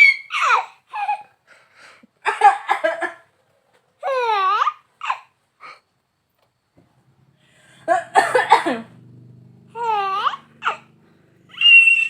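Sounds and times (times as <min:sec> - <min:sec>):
baby squealing: 0:00.0 - 0:01.3, 0:09.8 - 0:10.9, 0:11.5 - 0:12.0
baby laughing: 0:09.8 - 0:10.9.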